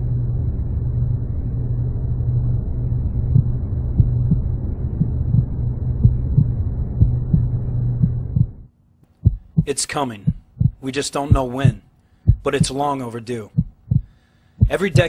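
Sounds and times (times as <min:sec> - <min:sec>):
steady low drone: 0:00.0 - 0:08.7
heartbeat-like double thumps: 0:03.1 - 0:12.8, 0:13.5 - 0:15.0.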